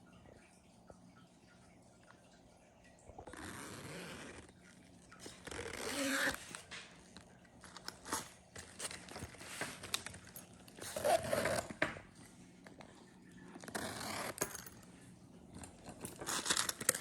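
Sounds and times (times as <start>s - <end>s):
canvas pouch rustling: 3.3s - 4.5s, 5.3s - 6.7s, 7.6s - 11.7s.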